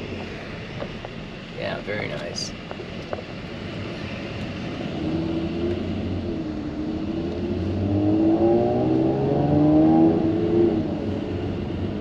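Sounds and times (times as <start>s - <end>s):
car engine accelerating: 2.9s - 12.0s.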